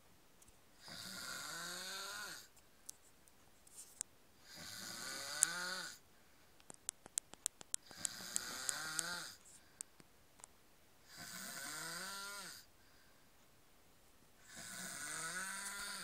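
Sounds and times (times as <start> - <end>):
man snoring: 0.8 - 2.5, 4.4 - 6.0, 7.9 - 9.4, 11.1 - 12.7, 14.4 - 16.0
faint sharp clicks: 6.6 - 10.6.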